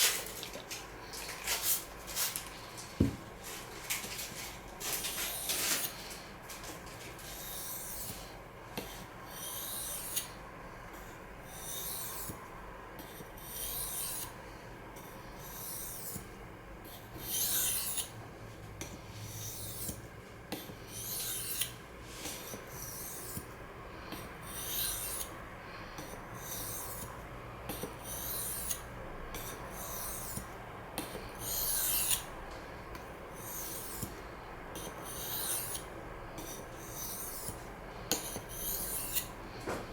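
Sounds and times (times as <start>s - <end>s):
knife scraping on sharpening stone: 13.1s - 14.3s, 16.9s - 18.1s, 21.0s - 21.8s, 24.4s - 25.3s, 28.0s - 28.8s, 31.4s - 32.3s, 34.8s - 39.3s.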